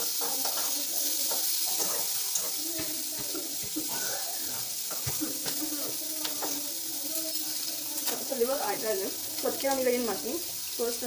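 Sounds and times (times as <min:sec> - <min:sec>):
tap running water into sink: 0:00.2 - 0:06.7.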